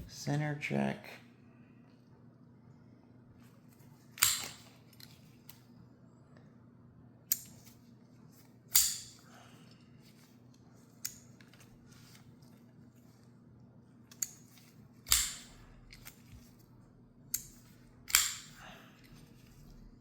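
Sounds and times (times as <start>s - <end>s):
folding knife clicking: 4.2s - 4.6s, 8.7s - 9.2s, 14.1s - 14.4s, 15.0s - 16.2s, 17.3s - 18.6s.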